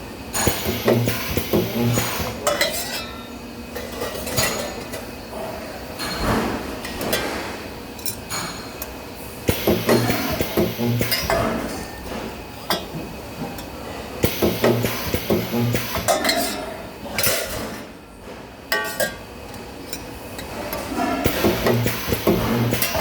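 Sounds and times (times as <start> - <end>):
short electrical hums: 0.4 - 2.5, 9.5 - 11.7, 14.2 - 16.1, 21.2 - 23.0.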